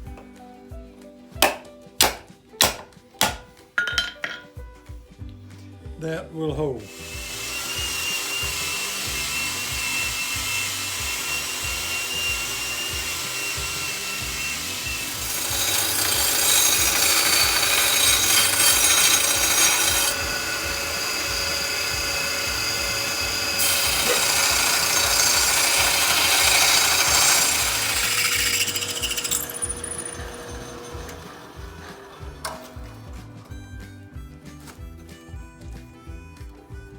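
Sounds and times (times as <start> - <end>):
power tool grinding steel: 6.8 - 33.6.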